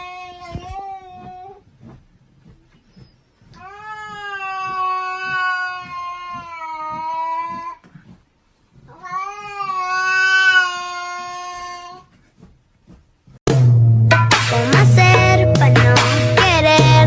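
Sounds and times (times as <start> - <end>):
cat yowling: 3.6 - 7.7, 8.9 - 12.0.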